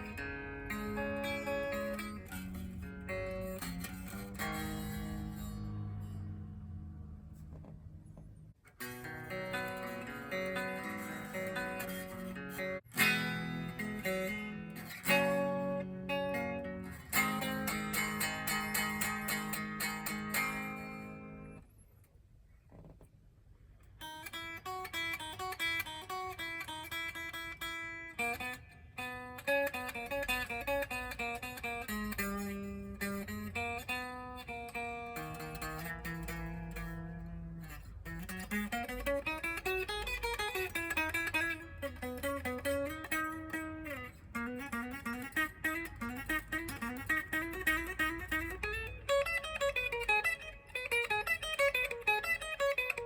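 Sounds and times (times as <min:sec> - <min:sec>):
clean electric guitar notes: 0:00.0 - 0:08.1
electric guitar lead: 0:00.0 - 0:21.6, 0:24.0 - 0:53.0.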